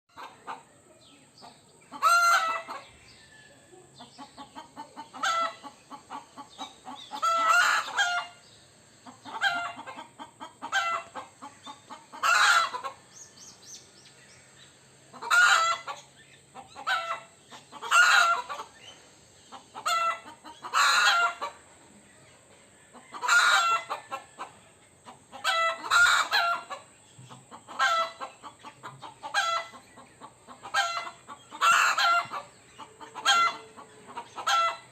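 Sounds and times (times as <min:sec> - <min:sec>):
rooster alarm calls: 0:01.9 - 0:03.5, 0:04.2 - 0:08.4, 0:09.1 - 0:13.1, 0:15.1 - 0:18.7, 0:19.5 - 0:21.6, 0:22.8 - 0:26.9, 0:27.5 - 0:34.9.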